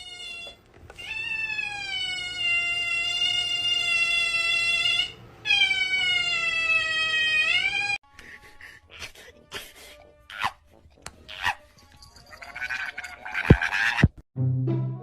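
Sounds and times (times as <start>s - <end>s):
cat yowling: 0.0s - 8.0s.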